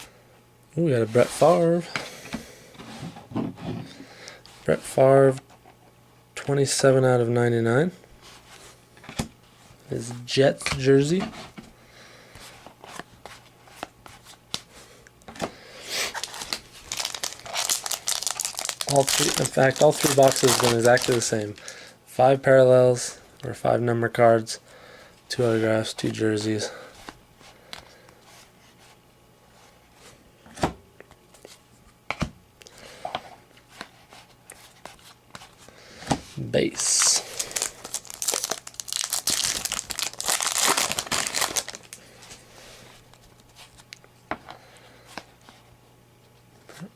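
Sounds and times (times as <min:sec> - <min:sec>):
trading cards being handled: 0:16.1 - 0:21.8, 0:36.8 - 0:42.4.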